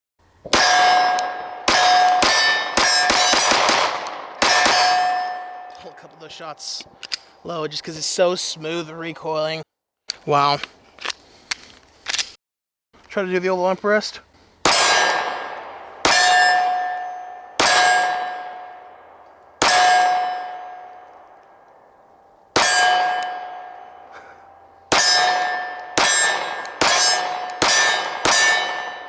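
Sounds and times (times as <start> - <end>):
pistol shots: 0.5 - 7.4, 14.6 - 29.0
steel target ringing: 0.5 - 8.0, 14.7 - 29.0.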